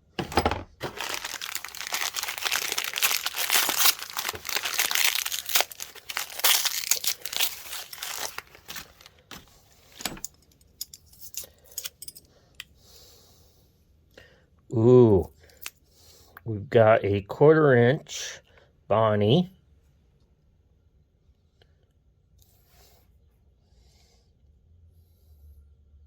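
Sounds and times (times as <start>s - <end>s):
packaging crinkling and tearing: 0.8s - 10.0s.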